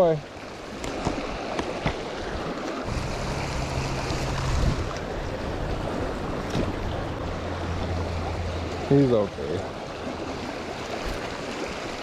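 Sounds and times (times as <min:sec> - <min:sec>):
creek water running: 0:00.0 - 0:12.0
low rumble on microphone: 0:02.9 - 0:08.8.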